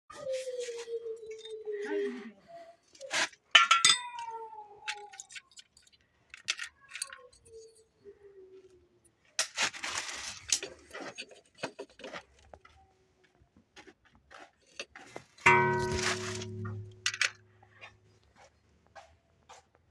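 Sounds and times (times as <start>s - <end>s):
compressor metallic clinks and rattles: 15.5s - 17.4s.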